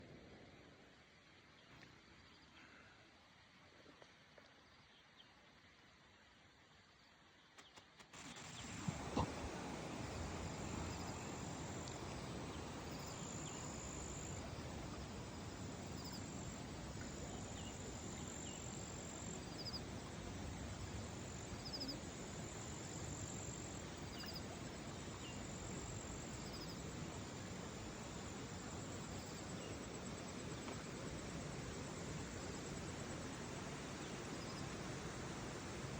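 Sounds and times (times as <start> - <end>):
background hiss: 0.0 - 35.9
faint chirps: 8.2 - 35.6
insect trills: 8.2 - 35.9.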